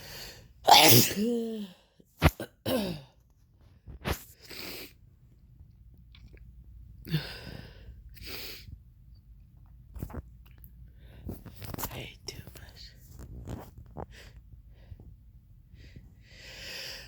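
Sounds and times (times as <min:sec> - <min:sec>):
person sneezing: 0:00.7 - 0:03.1.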